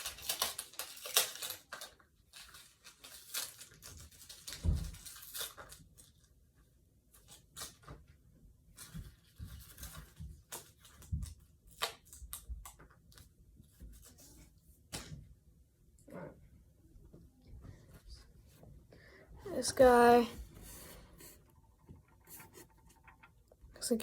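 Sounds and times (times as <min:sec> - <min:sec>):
packaging rustling and tearing: 0:00.0 - 0:06.3.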